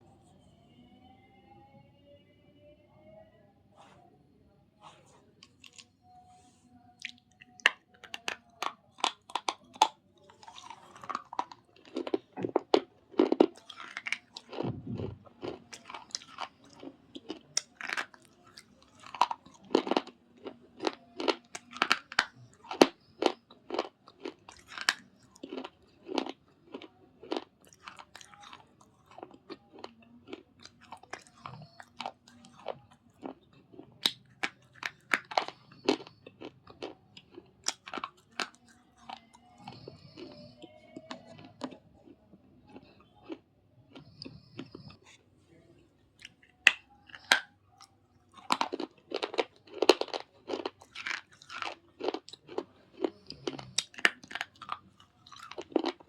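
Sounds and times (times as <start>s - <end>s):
dry crunches of chewing: 5.4s - 6.0s, 7.0s - 45.2s, 46.2s - 56.0s.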